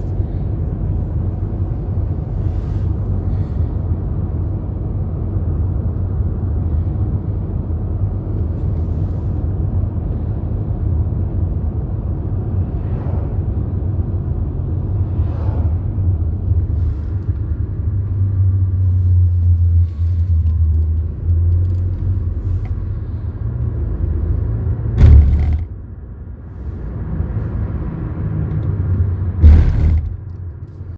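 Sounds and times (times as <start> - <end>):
road and engine rumble: 0.0 - 30.9
loud sharp thump: 25.0 - 25.8, 29.4 - 30.3.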